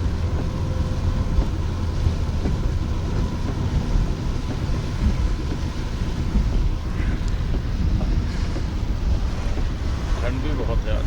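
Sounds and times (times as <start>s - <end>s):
car road and engine rumble: 0.0s - 11.0s.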